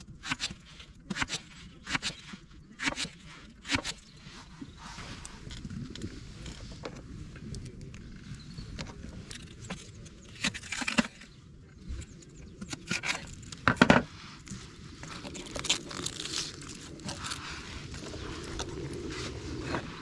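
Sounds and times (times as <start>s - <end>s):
crinkling and scraping: 4.2s - 20.0s.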